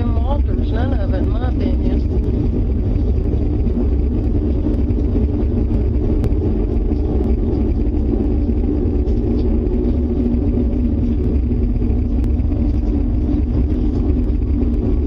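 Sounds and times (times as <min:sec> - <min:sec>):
deep rumbling drone: 0:00.0 - 0:15.0
sustained droning tones: 0:00.0 - 0:15.0.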